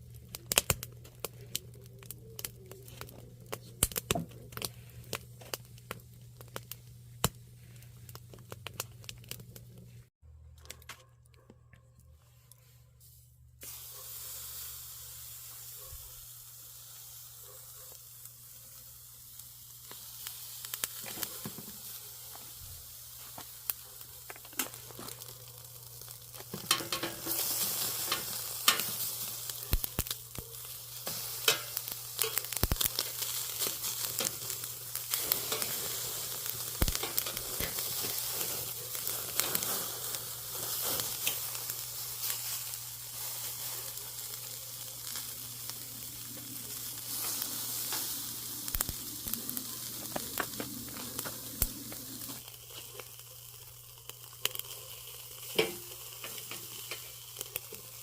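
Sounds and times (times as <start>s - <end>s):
chicken frying in oil: 13.7s - 58.0s.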